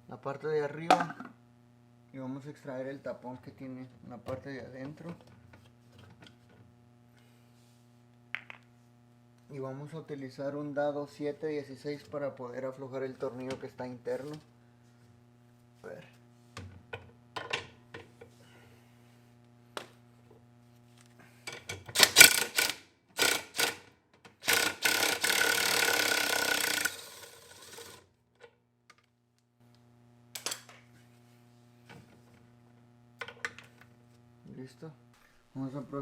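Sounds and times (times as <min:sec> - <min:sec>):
socket ratchet clicking: 0:22.0 - 0:23.8.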